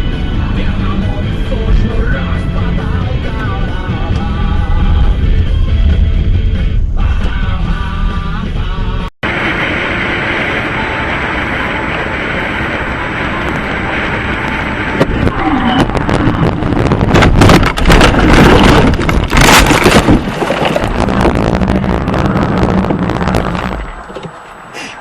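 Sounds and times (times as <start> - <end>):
car interior driving noise: 9.3 - 25.0.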